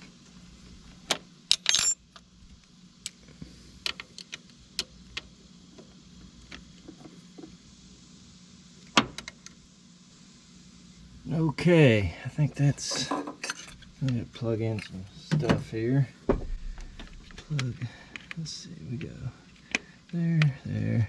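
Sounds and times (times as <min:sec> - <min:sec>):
faint steady hum: 0:00.0 - 0:21.0
metal tools and parts clinking: 0:01.5 - 0:02.0, 0:12.9 - 0:13.9.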